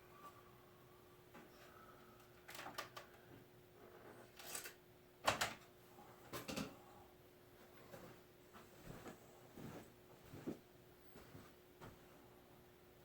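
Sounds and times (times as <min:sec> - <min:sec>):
plastic parts clicking and knocking: 0:04.4 - 0:05.7.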